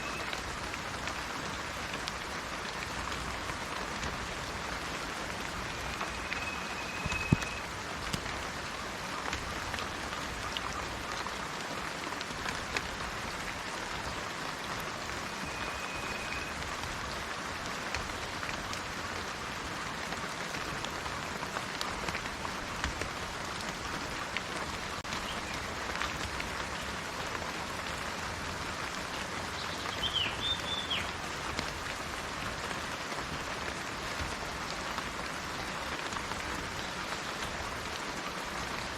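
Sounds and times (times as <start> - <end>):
rain pattering: 0.0 - 38.9
bird call with sliding notes: 5.8 - 7.6
bird whistling: 6.0 - 7.6.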